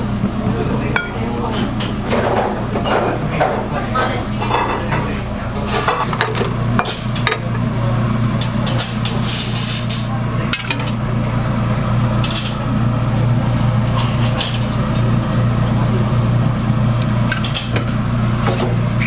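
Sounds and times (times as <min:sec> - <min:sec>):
metal utensils clinking on pans: 0:01.0 - 0:07.5.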